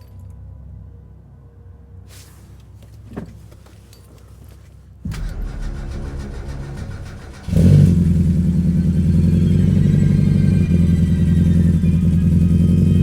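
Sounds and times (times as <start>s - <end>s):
engine cranking and starting: 5.1s - 13.0s.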